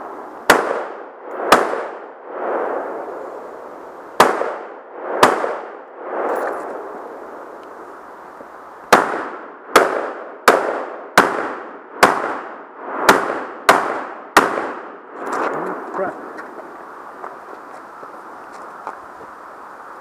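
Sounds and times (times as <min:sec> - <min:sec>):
rifle shots: 0:00.5 - 0:02.1, 0:04.2 - 0:05.8, 0:08.9 - 0:15.0.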